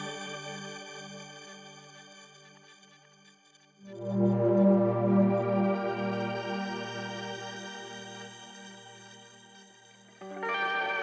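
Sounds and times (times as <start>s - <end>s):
soft synthesizer notes: 3.8s - 11.0s.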